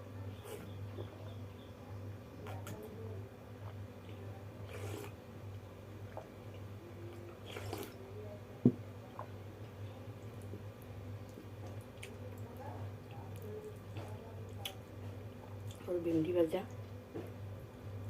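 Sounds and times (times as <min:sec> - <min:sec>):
person chewing food: 0:09.1 - 0:12.5.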